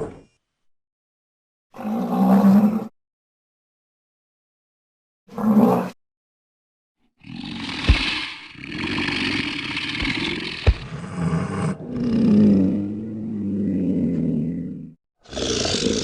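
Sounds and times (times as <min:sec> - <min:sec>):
low thump: 0:10.0 - 0:10.9
monster hissing roar: 0:15.3 - 0:16.0.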